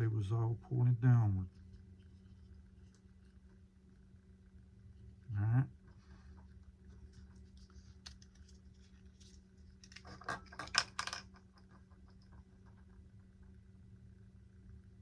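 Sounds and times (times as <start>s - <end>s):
plastic parts clicking and tapping: 9.8s - 11.5s.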